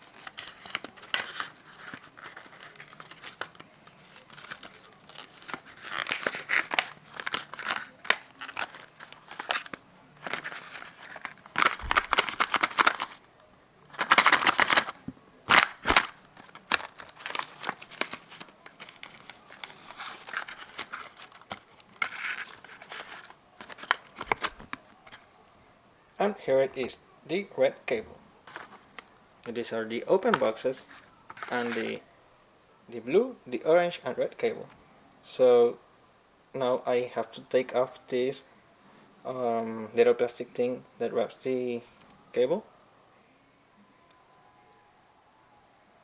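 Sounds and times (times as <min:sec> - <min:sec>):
packaging crinkling and tearing: 0:00.0 - 0:13.2, 0:13.9 - 0:25.2, 0:28.5 - 0:29.0, 0:30.2 - 0:32.0.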